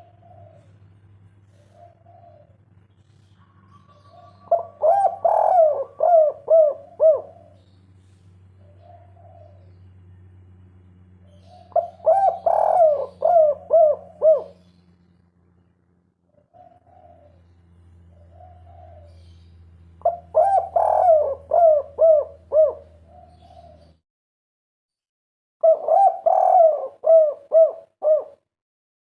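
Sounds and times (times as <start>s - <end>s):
dove cooing: 0.0s - 15.0s, 16.3s - 24.0s, 25.6s - 28.5s
low steady hum: 0.0s - 24.0s.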